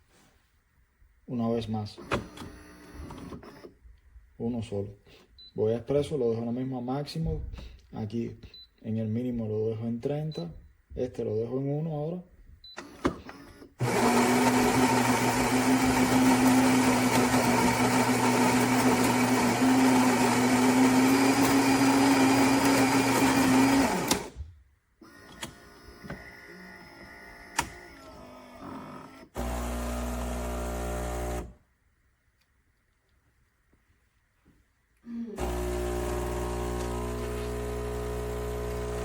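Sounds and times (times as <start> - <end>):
coffee grinder running: 13.8 - 24.4, 28.1 - 31.6, 35.4 - 39.0.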